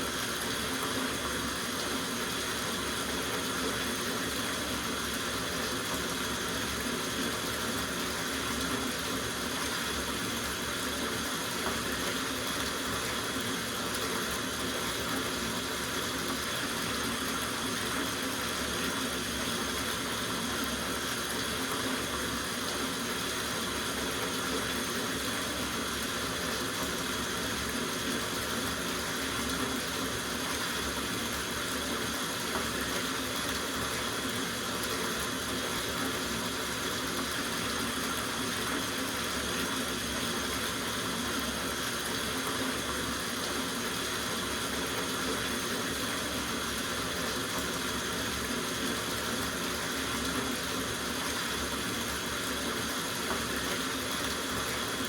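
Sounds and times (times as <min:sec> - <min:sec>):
tap water filling bathtub: 0:00.0 - 0:55.0.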